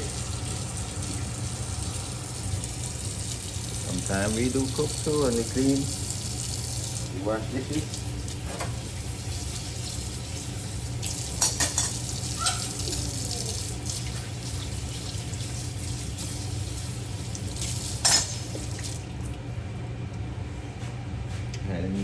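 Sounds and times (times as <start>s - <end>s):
pots and dishes clinking: 11.2s - 13.4s, 18.0s - 18.8s.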